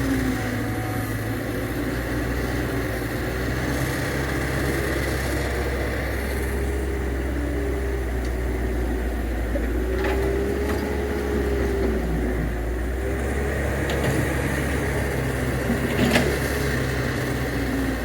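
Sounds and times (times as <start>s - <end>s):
diesel engine running: 0.0s - 18.0s.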